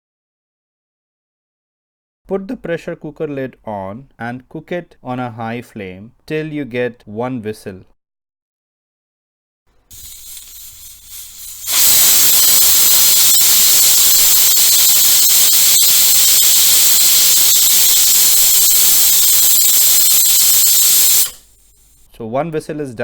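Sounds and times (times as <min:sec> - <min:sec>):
pressure cooker whistling steam: 0:09.9 - 0:22.0.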